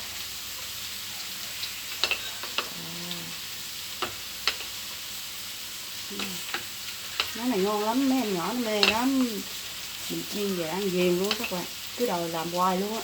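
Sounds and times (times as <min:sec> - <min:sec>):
rice sizzling in a pan: 0:00.0 - 0:13.0
spatula clicking against pan: 0:08.7 - 0:09.2, 0:11.2 - 0:11.6.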